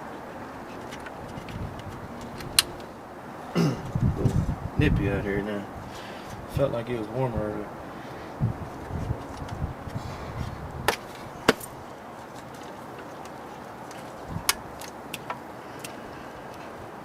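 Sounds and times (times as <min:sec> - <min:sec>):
clicks of parts fitted by hand: 0:00.8 - 0:02.9.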